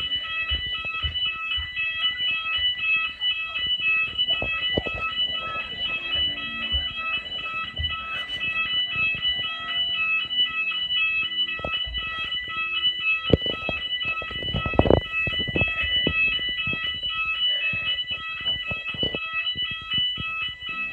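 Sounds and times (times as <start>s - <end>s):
fire alarm beeping: 0.0s - 20.9s
knocks and thumps: 13.3s - 20.9s.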